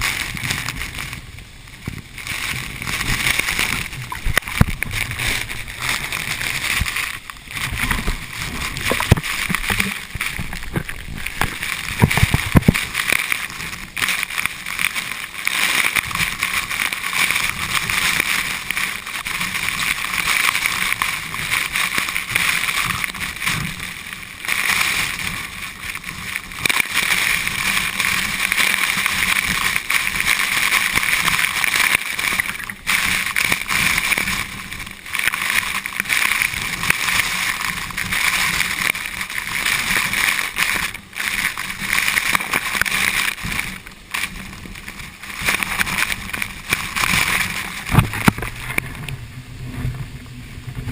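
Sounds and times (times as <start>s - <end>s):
low rumble: 1.6s - 13.0s
waterfall rushing: 1.7s - 49.3s.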